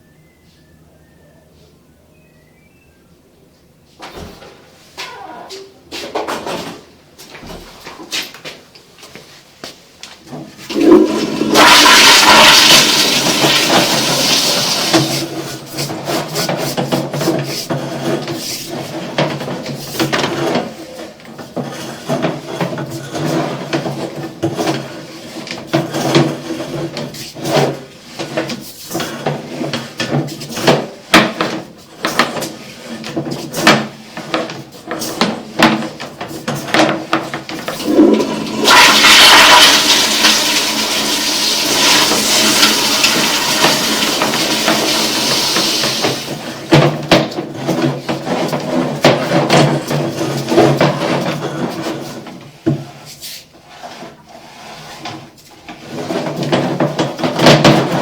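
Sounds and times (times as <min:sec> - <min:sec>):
toilet flushing water rushing: 0:10.6 - 0:16.6, 0:37.7 - 0:46.7.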